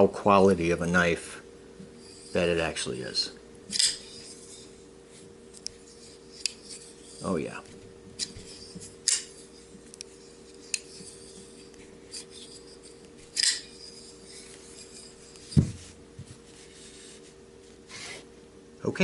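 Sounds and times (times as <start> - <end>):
metal rubbing: 1.9 - 18.2
dull thump: 15.6 - 16.3.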